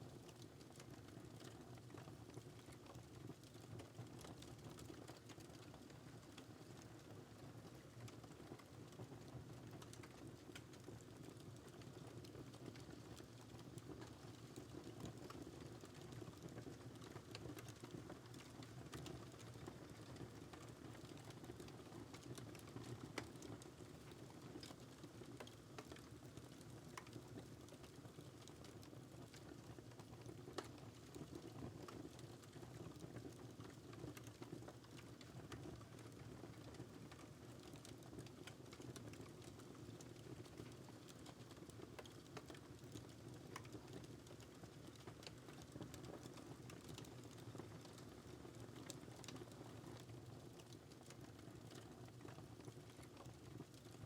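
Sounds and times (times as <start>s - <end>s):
wood fire crackling: 7.8s - 54.0s.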